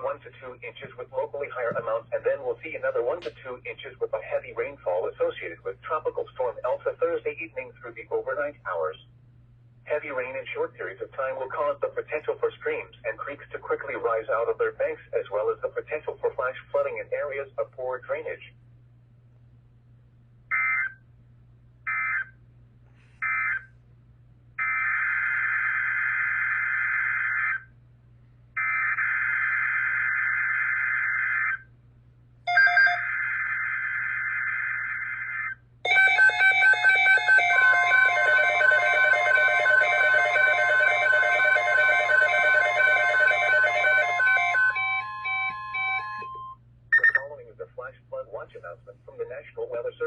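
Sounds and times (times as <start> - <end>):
stepping electronic alarm beeping: 32.5 - 33.0, 35.9 - 47.3
steady alert tone: 35.9 - 47.2.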